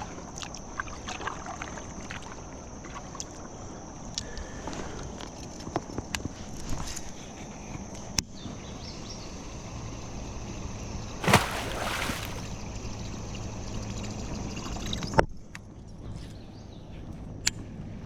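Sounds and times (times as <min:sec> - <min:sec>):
loud water splash: 0:11.2 - 0:12.5
water sloshing around kayak: 0:11.2 - 0:12.5.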